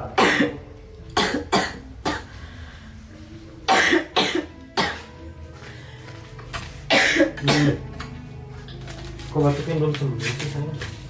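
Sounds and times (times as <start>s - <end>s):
background music: 0.0s - 11.0s
woman coughing: 0.2s - 0.6s, 1.2s - 2.3s, 3.7s - 5.1s, 6.9s - 7.9s.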